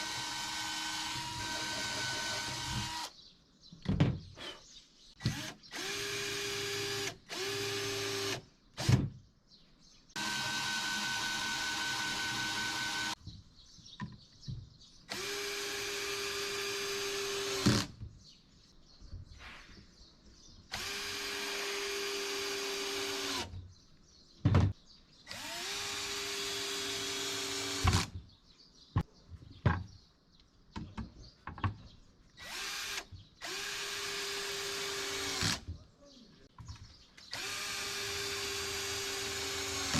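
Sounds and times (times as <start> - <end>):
electric drill running in bursts: 0.0 - 3.1, 5.3 - 8.4, 10.2 - 13.2, 15.1 - 17.9, 20.7 - 23.5, 25.3 - 28.1, 32.4 - 35.6, 37.3 - 39.9.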